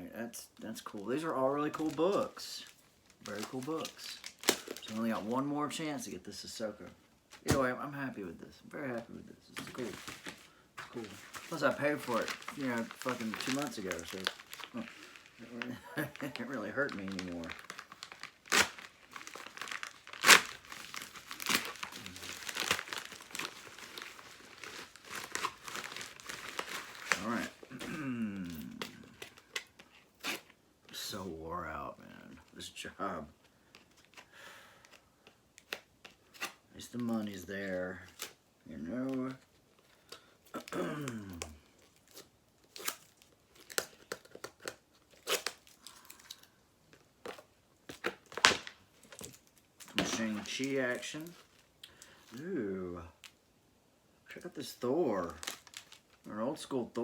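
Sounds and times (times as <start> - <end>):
packaging crinkling: 0.9 - 5.5, 9.4 - 30.5, 39.0 - 52.5, 55.1 - 56.3.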